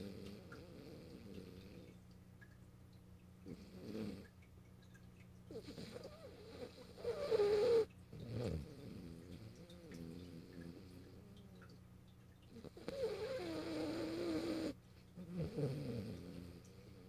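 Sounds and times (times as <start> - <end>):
dog snoring: 0.0 - 1.9, 3.4 - 4.3, 5.5 - 11.6, 12.5 - 17.0
steady low hum: 0.0 - 17.0.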